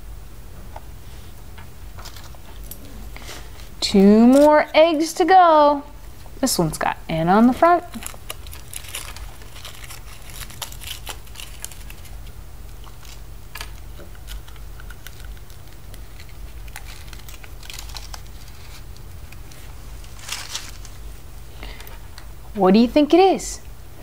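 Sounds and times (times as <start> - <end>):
low steady hum: 0.0 - 24.0
wrapper crinkling and tearing: 7.5 - 21.9.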